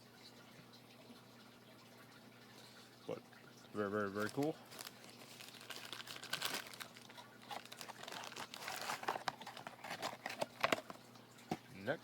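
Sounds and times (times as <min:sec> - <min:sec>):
plastic packaging crinkling: 0:04.0 - 0:11.0.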